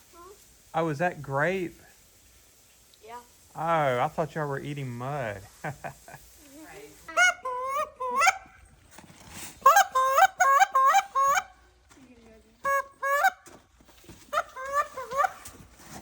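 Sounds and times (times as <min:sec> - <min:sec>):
geese honking: 0:07.1 - 0:08.6, 0:09.6 - 0:11.6, 0:12.6 - 0:13.5, 0:14.3 - 0:15.5.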